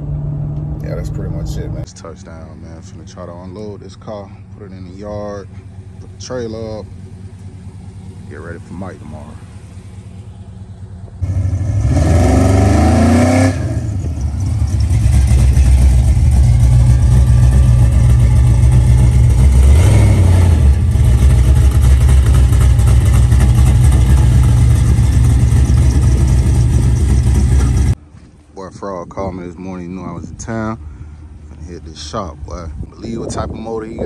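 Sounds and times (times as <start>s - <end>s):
car engine revving: 4.8s - 28.0s.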